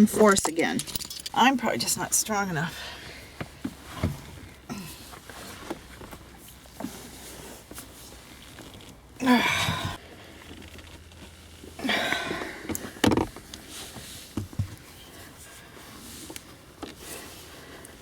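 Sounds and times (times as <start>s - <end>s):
person grunting with effort: 9.2s - 10.0s.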